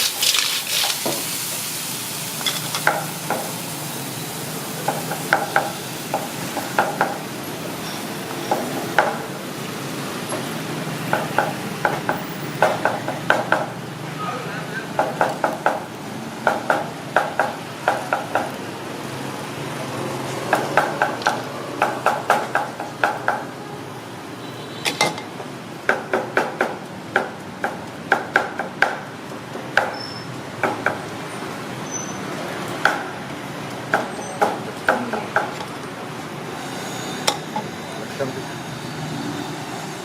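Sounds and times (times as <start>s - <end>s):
metal utensil clanging on wok: 2.4s - 3.1s, 24.9s - 25.3s.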